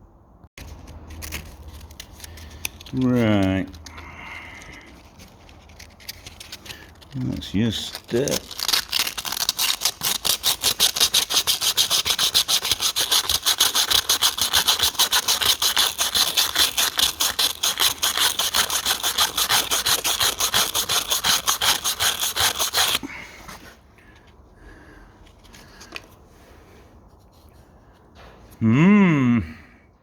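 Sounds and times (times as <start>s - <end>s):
abrasive paper rubbing on metal: 5.2s - 23.0s.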